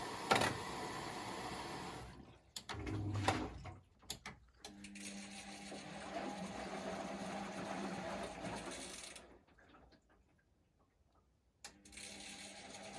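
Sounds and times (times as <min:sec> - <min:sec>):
washing machine spinning: 0:00.0 - 0:03.8, 0:05.1 - 0:09.4, 0:12.1 - 0:12.9.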